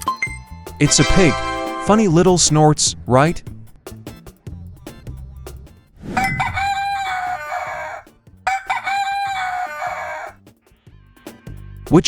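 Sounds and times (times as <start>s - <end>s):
rooster crowing: 6.2s - 10.4s.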